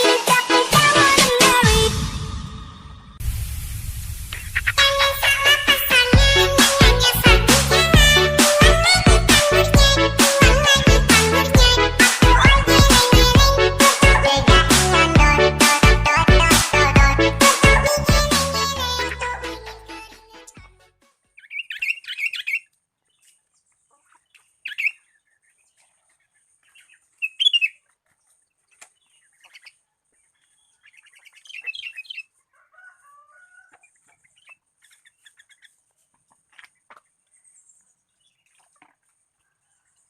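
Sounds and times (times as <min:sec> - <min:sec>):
songbird chirping and trilling: 0:21.2 - 0:40.0.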